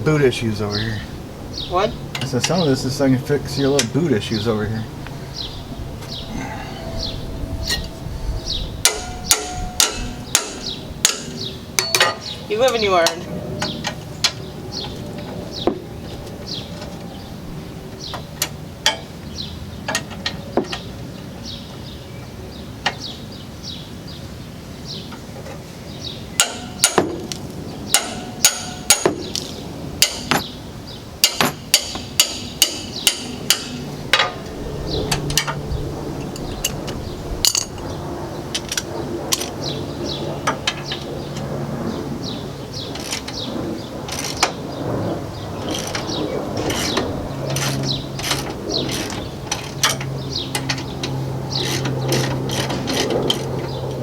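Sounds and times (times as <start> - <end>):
hand tools striking metal: 8.8 - 14.4, 26.4 - 30.6, 31.2 - 34.4, 37.4 - 37.8, 45.6 - 53.8.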